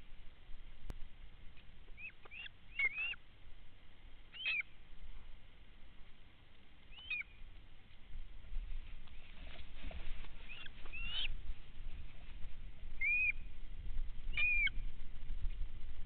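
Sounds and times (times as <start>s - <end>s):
chirping bird calls: 1.9s - 3.2s, 4.3s - 4.7s, 6.9s - 7.4s, 10.4s - 11.4s, 13.0s - 13.5s, 14.3s - 14.8s.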